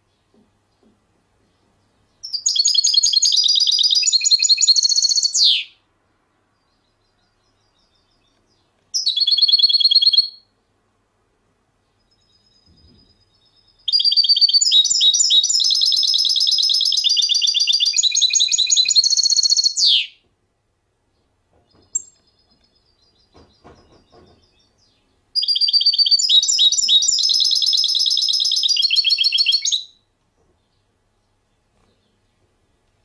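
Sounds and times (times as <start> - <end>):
songbird singing: 0.0 - 10.8, 11.5 - 33.0.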